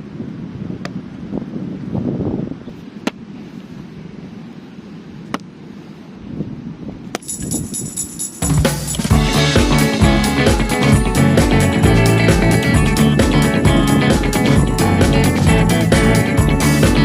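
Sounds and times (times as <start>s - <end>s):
wind rumbling on microphone: 0.0s - 8.1s.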